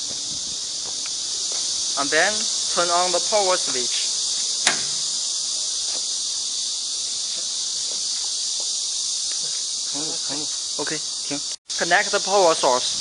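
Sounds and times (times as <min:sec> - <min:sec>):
high-pitched hiss: 0:00.0 - 0:13.0
sharp click: 0:04.6 - 0:05.1.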